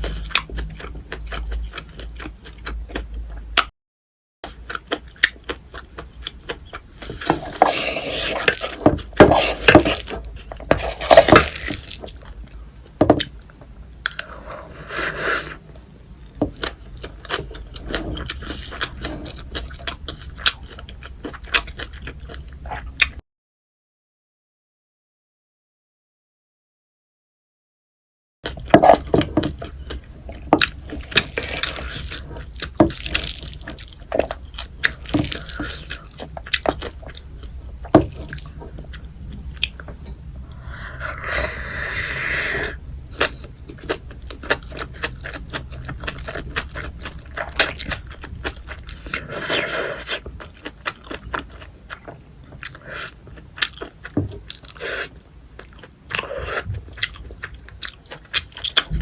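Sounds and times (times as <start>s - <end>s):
wet chewing: 4.4s - 15.9s, 28.5s - 59.0s.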